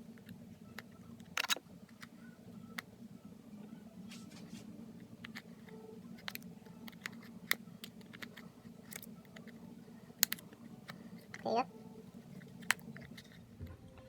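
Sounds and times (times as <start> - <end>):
low steady hum: 0.0 - 14.0
plastic tool prying clicks: 5.2 - 9.6, 10.2 - 11.4.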